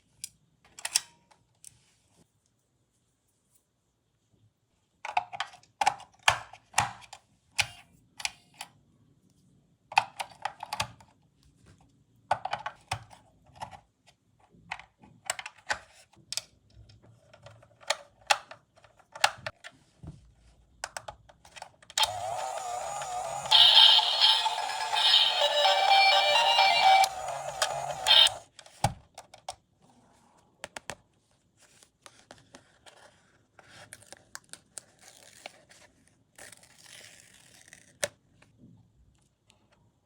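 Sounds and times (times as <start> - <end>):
tinny electronic tune: 22.0 - 28.4.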